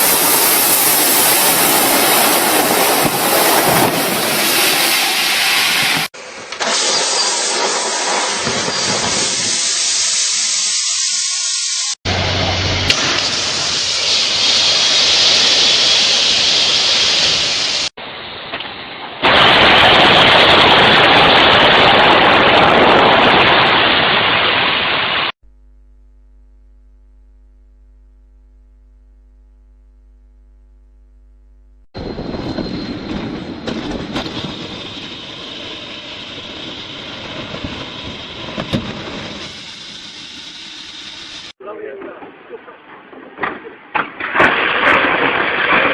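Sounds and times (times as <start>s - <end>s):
evacuation slide inflating hiss: 4.2s - 12.0s
low steady hum: 25.4s - 31.9s.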